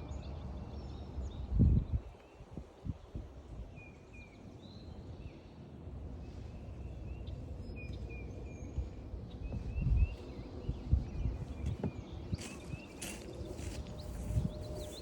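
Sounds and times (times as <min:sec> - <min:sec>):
songbirds chirping: 0:00.0 - 0:15.0
steady low rumble: 0:05.8 - 0:15.0
soft footsteps: 0:11.6 - 0:15.0.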